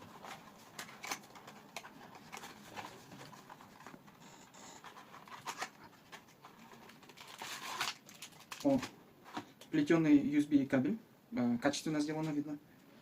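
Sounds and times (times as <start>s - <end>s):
packaging rustling and clicking: 0.0s - 4.2s, 4.8s - 9.6s.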